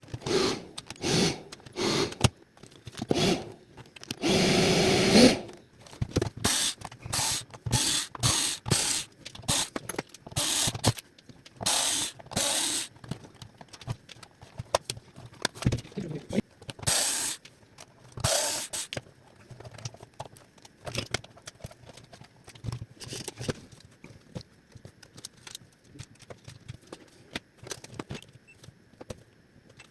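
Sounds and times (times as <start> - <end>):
steady noise: 0.0 - 13.2, 16.8 - 17.6, 18.2 - 19.0.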